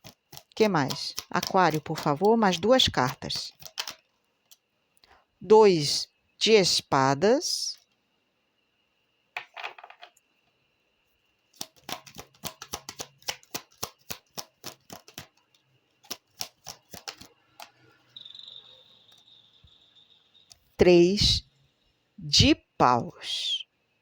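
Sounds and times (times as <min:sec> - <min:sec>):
cards clicking and snapping: 0:00.0 - 0:04.0, 0:11.6 - 0:17.8.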